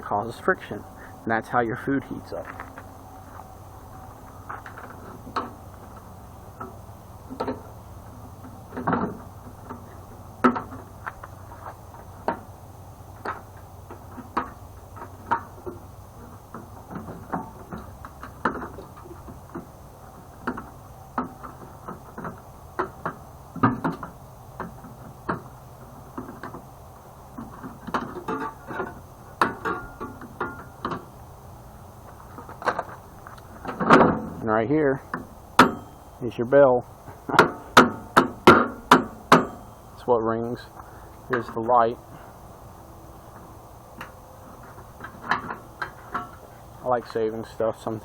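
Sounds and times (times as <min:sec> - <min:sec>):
steady low hum: 0:00.0 - 0:48.0.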